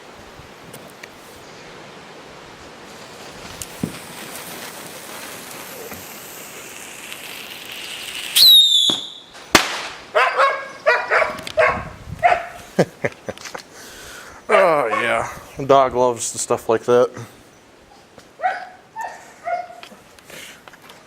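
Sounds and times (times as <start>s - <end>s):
bottle rocket hiss and whistle: 3.1s - 10.0s
firework bang: 3.5s - 10.2s
dog barking: 10.1s - 12.6s, 14.5s - 15.2s, 18.4s - 19.8s.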